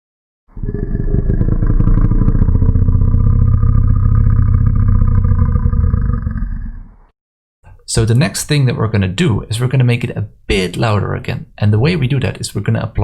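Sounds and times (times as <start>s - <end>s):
low pulsing monster growl: 0.5s - 7.1s.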